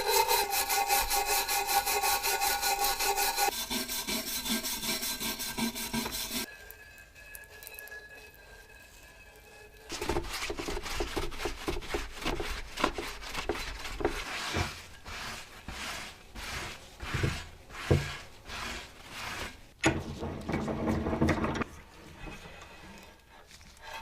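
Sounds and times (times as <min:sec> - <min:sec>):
scraping metal plate: 0:00.0 - 0:06.5.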